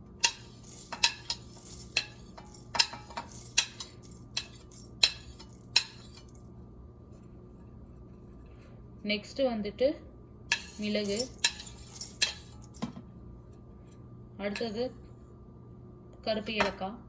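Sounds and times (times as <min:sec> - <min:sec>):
faint steady hum: 0:00.0 - 0:17.0
spoon clinking against jar: 0:00.2 - 0:06.4, 0:10.5 - 0:12.8.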